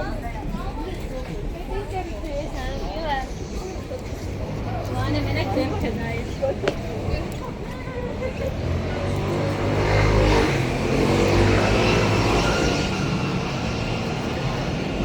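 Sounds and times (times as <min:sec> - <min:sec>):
vehicle driving past: 0:08.4 - 0:15.0.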